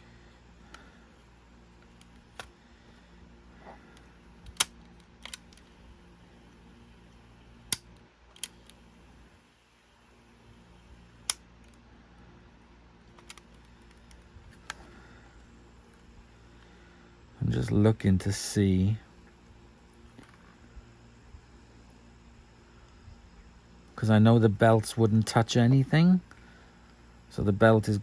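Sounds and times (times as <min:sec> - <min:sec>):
faint steady hum: 0:00.0 - 0:28.0.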